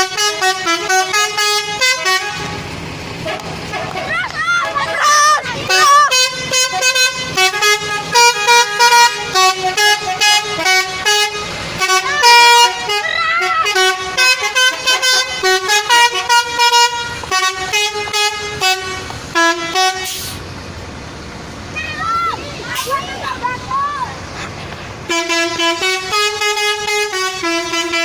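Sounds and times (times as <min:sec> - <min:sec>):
musical vehicle horns tooting: 0:00.0 - 0:20.5, 0:24.7 - 0:28.0.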